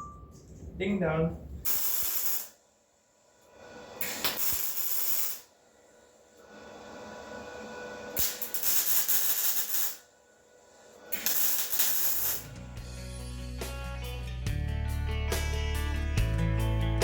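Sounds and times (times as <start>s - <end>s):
music: 12.4s - 17.0s.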